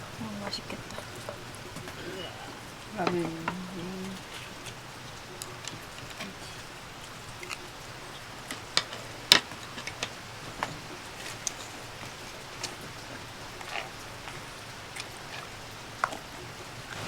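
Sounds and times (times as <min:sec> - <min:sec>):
drops tapping: 0:00.0 - 0:07.7
steady rain: 0:00.0 - 0:17.0.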